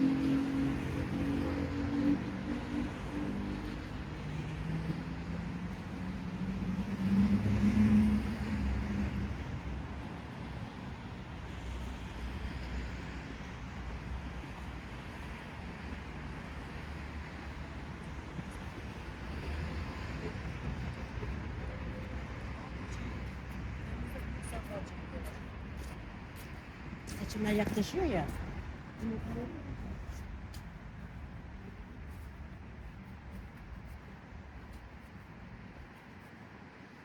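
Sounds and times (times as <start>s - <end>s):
low rumble of city ambience: 0.0s - 37.0s.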